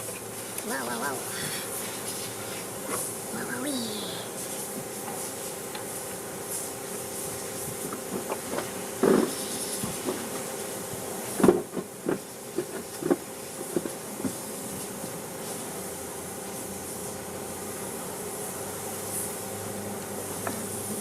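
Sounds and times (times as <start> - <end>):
mechanical hum with hiss: 0.0 - 21.0.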